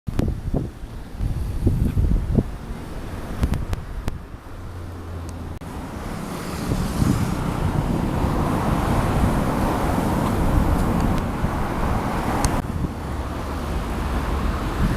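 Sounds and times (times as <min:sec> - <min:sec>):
motorcycle engine exhaust: 0:05.9 - 0:09.4.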